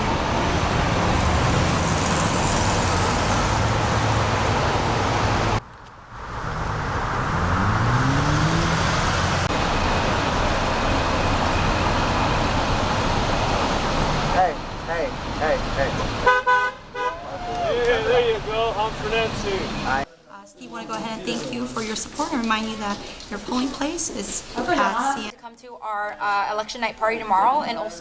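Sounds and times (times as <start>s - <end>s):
road traffic: 0.0s - 20.2s.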